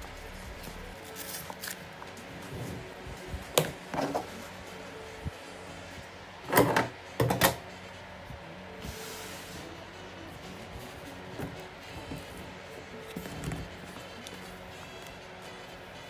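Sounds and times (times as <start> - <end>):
faint background music: 0.0 - 16.0
packaging clattering and rustling: 0.2 - 4.4, 10.4 - 15.2.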